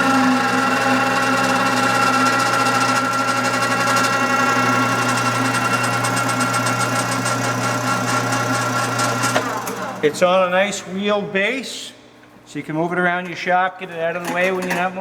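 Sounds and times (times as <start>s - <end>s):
electric motor hum and whine: 0.0s - 10.6s.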